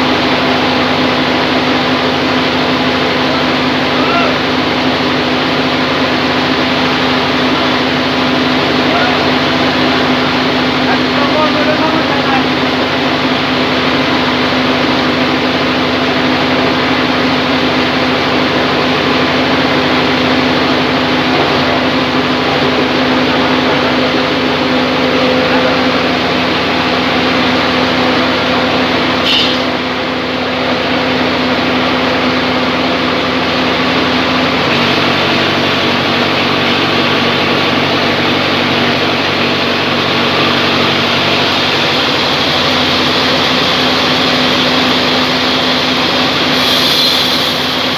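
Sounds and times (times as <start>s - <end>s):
deeper hum: 0.0s - 47.9s
motor hum: 33.5s - 47.9s
band saw rushing: 33.8s - 47.9s.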